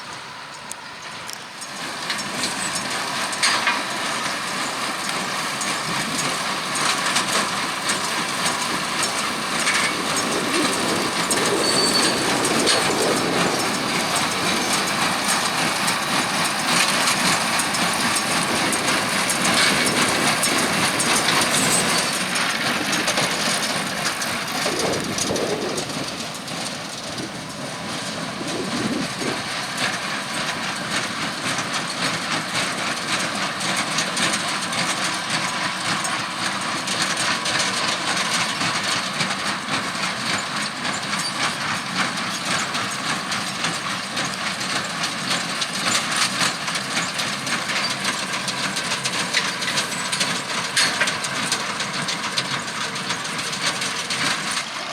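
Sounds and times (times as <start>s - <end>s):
tractor engine running: 0.0s - 54.9s.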